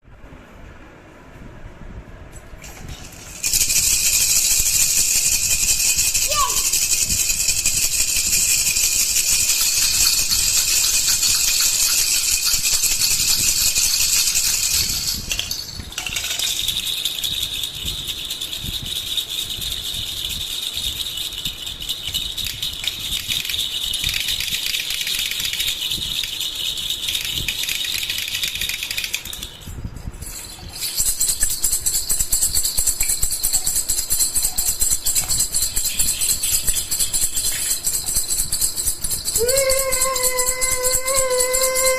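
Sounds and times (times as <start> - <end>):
baby rattle shaking: 2.6 - 41.9.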